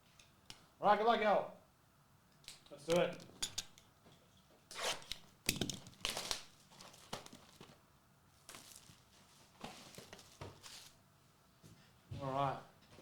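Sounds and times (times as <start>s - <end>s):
plastic wrapping crinkling and tearing: 6.0s - 7.7s.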